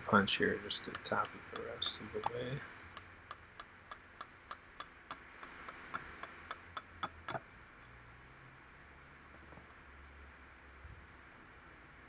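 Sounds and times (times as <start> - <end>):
hammer tapping metal punch: 0.7 - 7.4
hard hammer strikes: 0.8 - 7.4.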